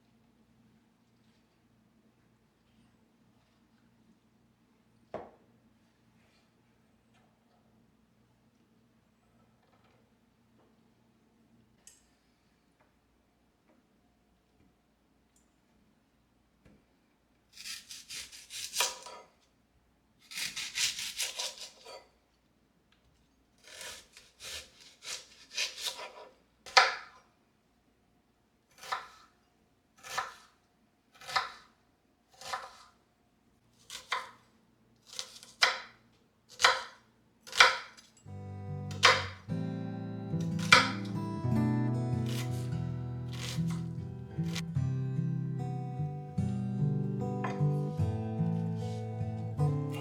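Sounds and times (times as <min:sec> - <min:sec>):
knife chopping on cutting board: 0:17.6 - 0:19.2, 0:20.3 - 0:22.0, 0:23.6 - 0:27.1, 0:28.8 - 0:29.3, 0:30.0 - 0:30.6, 0:31.2 - 0:31.7, 0:32.3 - 0:32.9, 0:33.9 - 0:34.4, 0:35.1 - 0:38.0, 0:38.9 - 0:39.4, 0:40.6 - 0:41.1, 0:42.2 - 0:42.7, 0:43.3 - 0:44.6.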